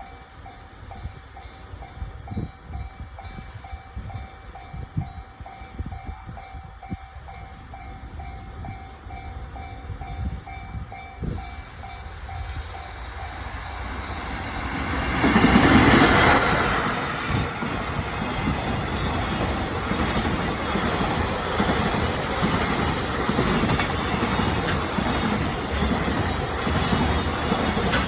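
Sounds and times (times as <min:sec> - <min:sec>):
crossing warning bell ringing: 0:00.0 - 0:28.0
freight train rumbling: 0:00.0 - 0:28.0
wheels clunking over rail joints: 0:12.8 - 0:28.0.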